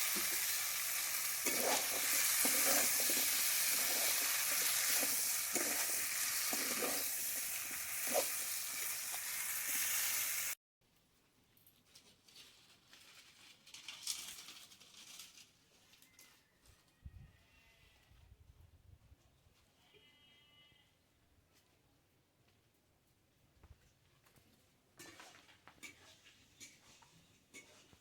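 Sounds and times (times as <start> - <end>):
spoon scraping and knocking pan: 0.0 - 10.3, 25.0 - 28.0
curry sizzling in hot oil: 0.0 - 10.6.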